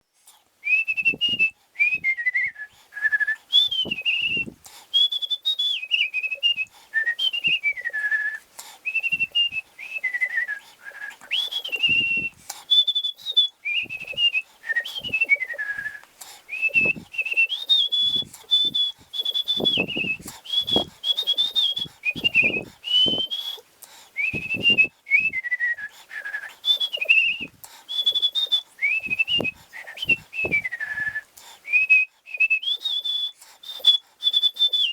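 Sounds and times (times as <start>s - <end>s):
person whistling a tune: 0.6s - 34.9s.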